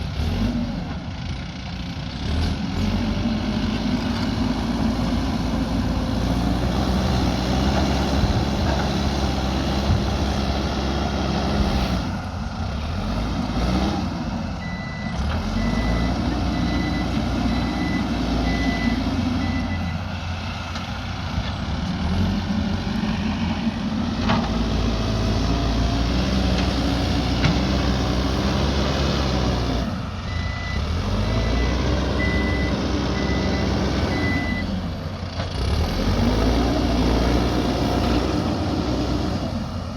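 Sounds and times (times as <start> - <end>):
diesel engine working under load: 0.0 - 39.9
reversing alarm beeping: 14.6 - 20.1, 30.3 - 34.8.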